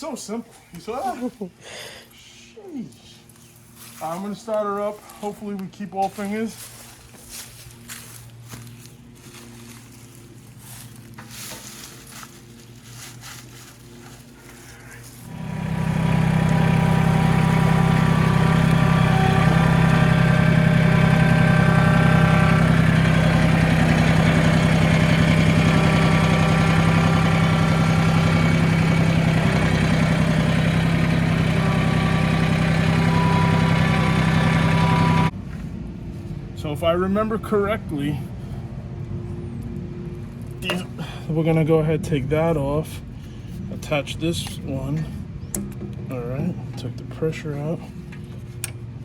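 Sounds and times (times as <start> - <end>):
tractor diesel engine idling: 15.1 - 35.3.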